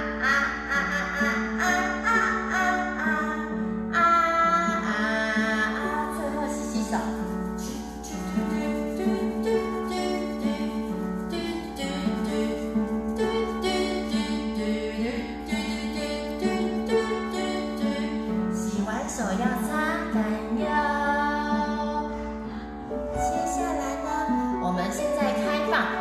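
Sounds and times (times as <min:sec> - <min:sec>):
person singing: 0:00.0 - 0:26.0
plucked guitar: 0:00.0 - 0:26.0.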